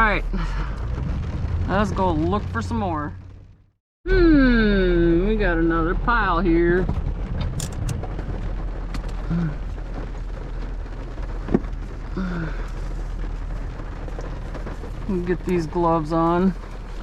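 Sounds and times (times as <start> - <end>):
rain on vehicle roof: 0.0 - 3.7, 4.7 - 17.0.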